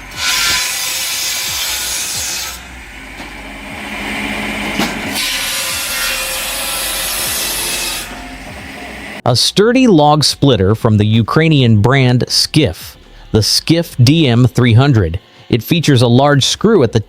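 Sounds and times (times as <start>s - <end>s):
machine running: 0.0s - 9.2s
power saw cutting log: 0.0s - 9.2s.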